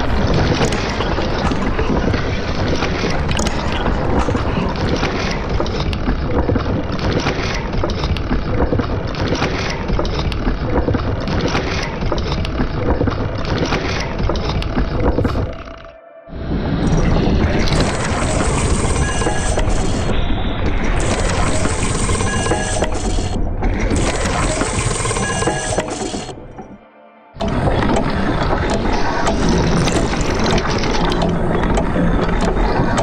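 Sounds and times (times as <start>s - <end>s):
machine churning: 0.0s - 15.9s, 16.7s - 26.8s, 27.4s - 33.0s.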